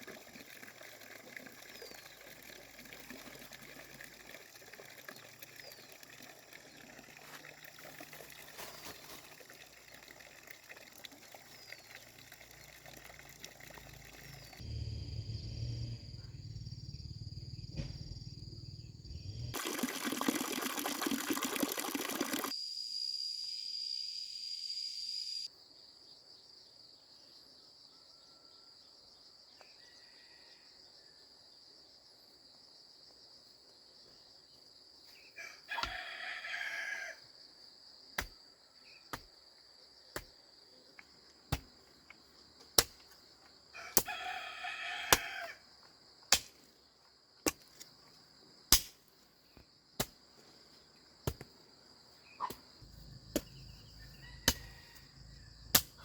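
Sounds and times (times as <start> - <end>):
running water: 0.0 - 14.6, 19.6 - 22.5
rooster crowing: 35.4 - 37.2, 43.8 - 45.6, 53.8 - 55.6.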